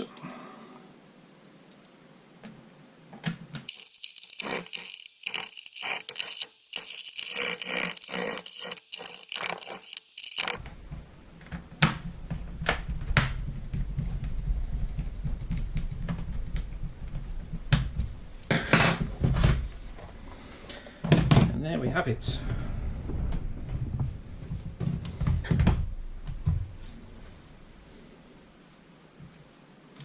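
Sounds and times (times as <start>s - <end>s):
screwdriver driving screws: 3.7s - 10.6s.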